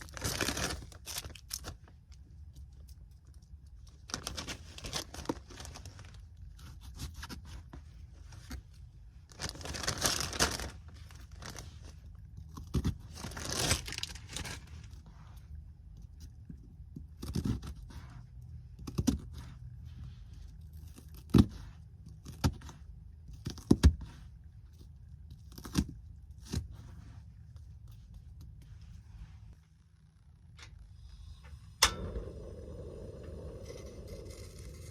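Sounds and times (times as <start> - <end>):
onion skin rustling: 0.0 - 16.5
steady low hum: 14.4 - 34.9.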